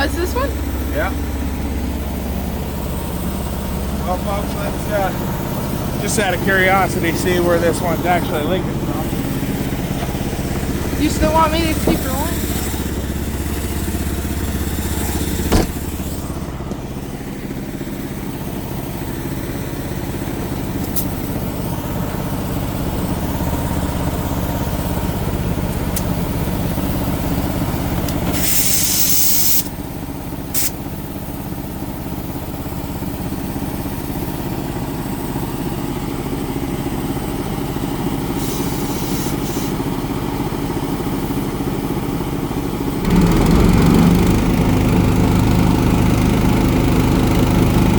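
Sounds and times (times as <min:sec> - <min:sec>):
engine running steadily: 0:00.0 - 0:47.9
hissing burst: 0:28.3 - 0:29.7.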